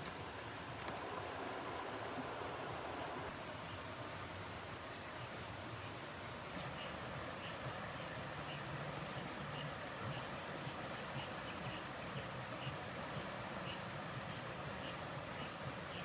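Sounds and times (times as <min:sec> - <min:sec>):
even hiss: 0:00.0 - 0:06.6
faint insect chirps: 0:00.0 - 0:06.6
insects trilling: 0:00.0 - 0:06.6.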